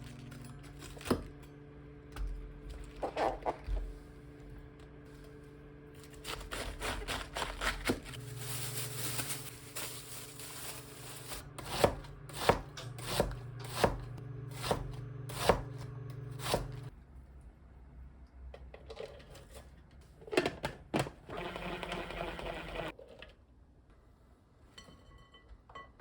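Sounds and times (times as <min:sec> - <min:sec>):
knife chopping on cutting board: 0:11.6 - 0:15.8, 0:16.4 - 0:16.8.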